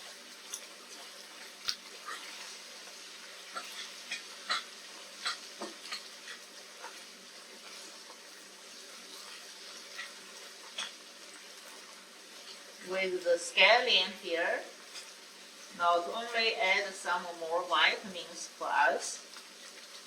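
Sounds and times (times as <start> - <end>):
eggs sizzling in a pan: 0.0 - 20.0.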